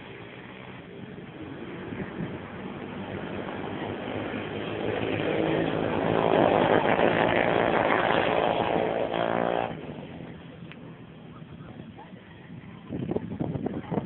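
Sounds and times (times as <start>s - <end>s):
small engine running: 0.0s - 10.7s.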